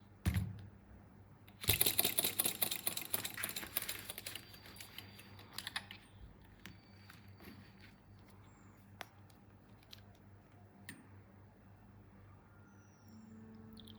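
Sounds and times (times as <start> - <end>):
toy mechanism clicking and rattling: 1.5 - 5.9.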